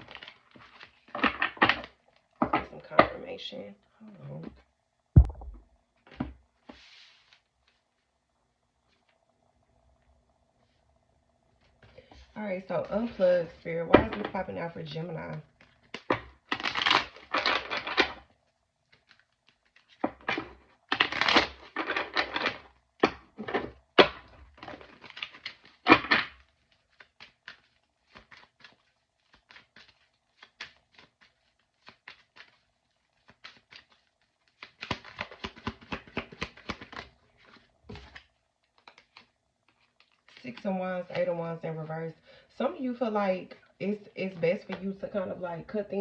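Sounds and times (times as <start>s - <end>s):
cards being shuffled: 15.5s - 41.3s.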